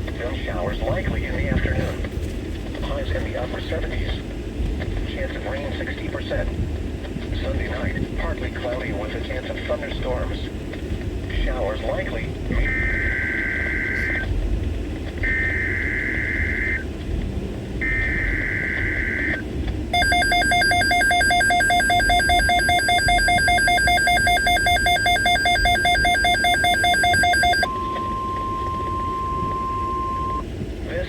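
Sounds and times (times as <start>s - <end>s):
loud pulsing alarm tone: 12.5s - 14.3s, 15.2s - 16.9s, 17.8s - 19.4s, 20.0s - 30.4s
screeching two-tone data bursts: 12.5s - 14.3s, 15.2s - 16.9s, 17.8s - 19.4s, 20.0s - 30.4s
steady single-pitch alert tone: 17.8s - 19.4s, 20.0s - 30.4s.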